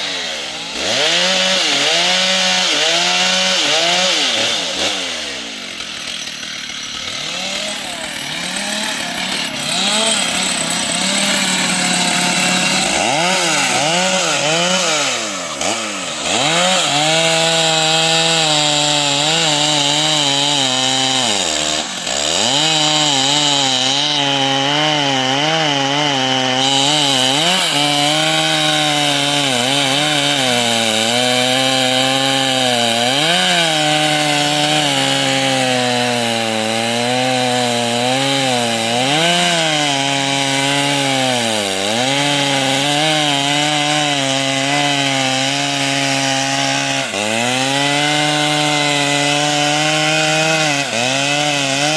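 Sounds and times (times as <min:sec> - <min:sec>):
chainsaw cutting wood: 0:00.0 - 0:51.9.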